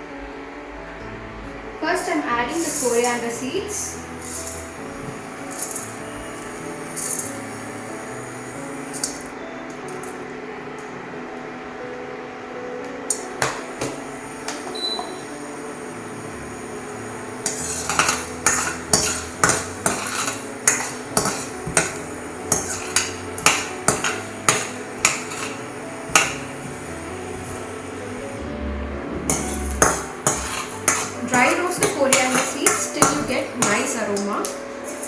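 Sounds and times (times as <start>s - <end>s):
spatula scraping a pan: 17.4s - 28.5s, 29.2s - 34.2s.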